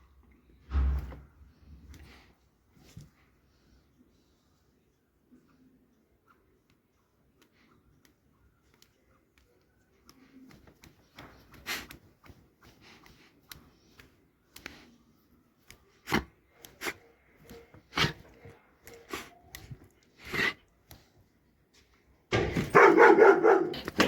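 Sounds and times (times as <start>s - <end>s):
dog barking loudly: 22.6s - 24.0s.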